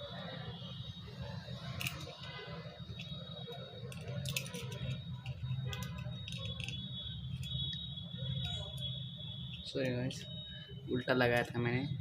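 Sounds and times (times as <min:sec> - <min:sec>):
faint high whine: 0:00.0 - 0:12.0
wires clicking against battery: 0:01.7 - 0:10.4.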